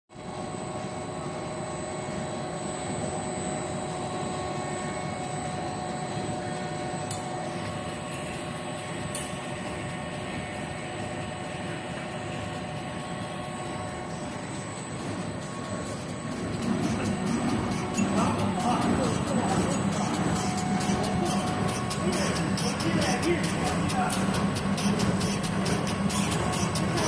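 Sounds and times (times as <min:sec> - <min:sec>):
steady whining tones: 0:00.4 - 0:27.0
machine drone: 0:11.0 - 0:27.0.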